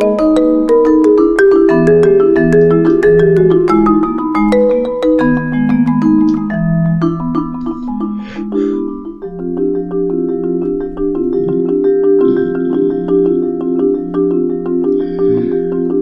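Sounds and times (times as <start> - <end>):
mallet percussion melody: 0.0 - 16.0
held low tones: 11.0 - 13.6, 15.2 - 16.0.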